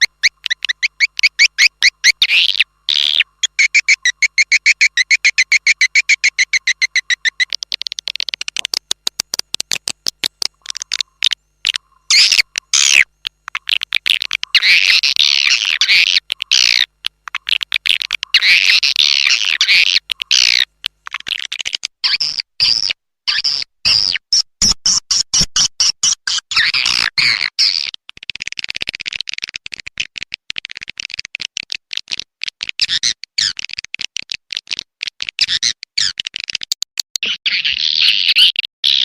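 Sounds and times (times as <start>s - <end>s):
high bird chirps and twittering: 0.0s - 8.8s, 10.5s - 24.0s.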